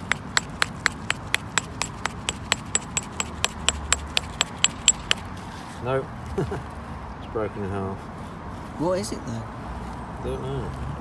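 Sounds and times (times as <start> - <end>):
small hammer tapping on metal: 0.0 - 5.2.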